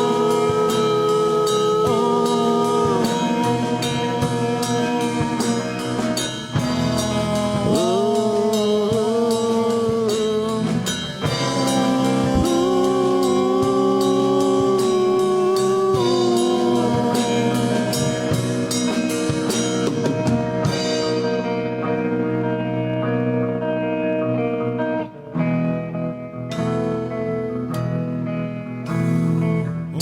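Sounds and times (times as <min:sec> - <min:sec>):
drum kit playing: 0:00.0 - 0:22.4
held guitar chords: 0:00.0 - 0:30.0.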